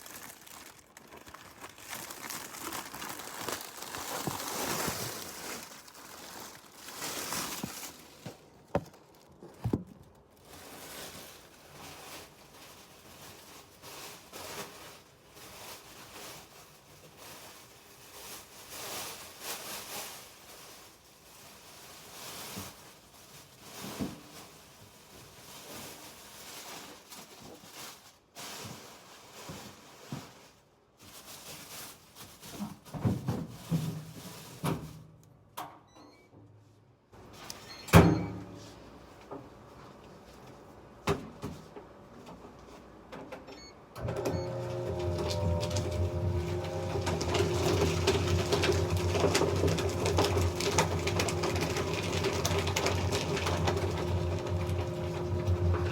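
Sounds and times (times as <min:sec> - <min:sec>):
paper rustling: 0:00.0 - 0:20.9, 0:44.2 - 0:55.9.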